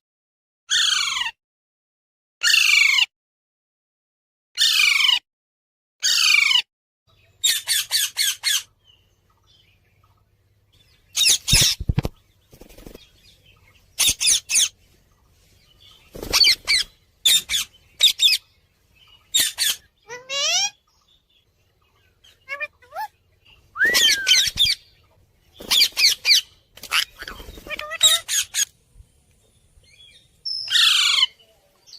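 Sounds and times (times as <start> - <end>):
parrots squawking: 0.7 - 1.4, 2.4 - 3.1, 4.6 - 5.2, 6.0 - 6.6, 7.4 - 8.7, 11.2 - 11.9, 14.0 - 14.7, 16.2 - 18.4, 19.3 - 20.8, 22.2 - 23.1, 23.8 - 24.9, 25.7 - 28.7, 30.7 - 31.4.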